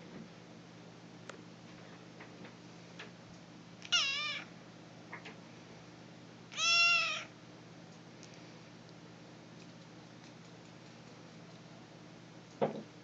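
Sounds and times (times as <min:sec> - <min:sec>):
cat meowing: 0:03.8 - 0:04.5, 0:06.5 - 0:07.3.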